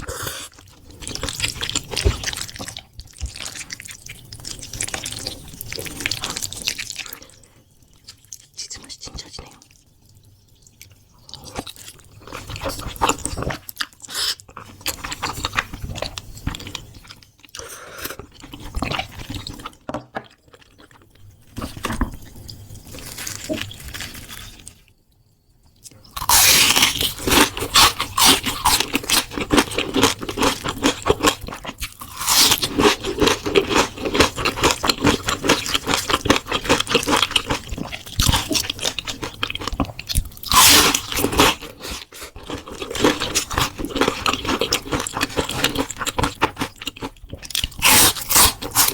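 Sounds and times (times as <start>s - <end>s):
loud crunching of fried food: 22.8s - 24.9s, 26.1s - 48.9s
chewing: 25.8s - 48.9s.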